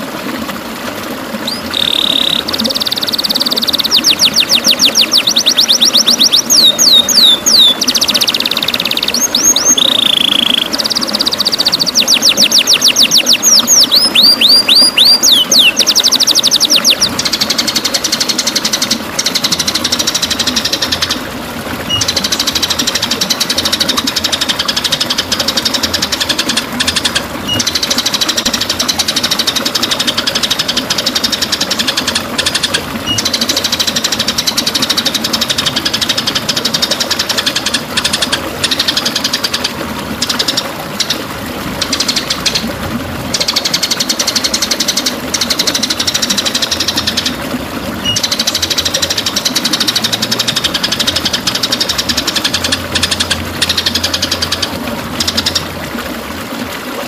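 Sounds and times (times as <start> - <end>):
bird whistled song: 1.4 - 17.2, 21.9 - 22.1, 33.1 - 33.3, 48.0 - 48.5
buzzy bird phrases: 1.4 - 17.3
fast rattling bird trill: 1.4 - 21.1, 43.3 - 47.4, 48.0 - 55.6.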